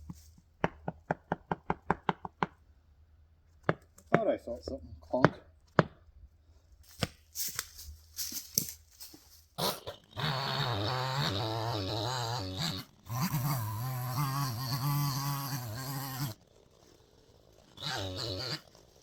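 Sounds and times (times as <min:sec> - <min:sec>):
tree creaking and groaning: 0:07.8 - 0:19.0.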